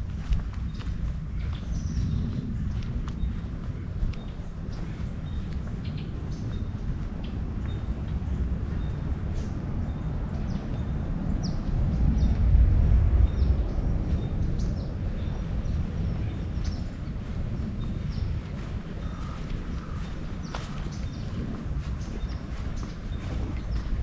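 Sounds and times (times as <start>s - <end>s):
low rumble: 0.0s - 24.0s
footsteps crunching dry leaves: 16.4s - 24.0s.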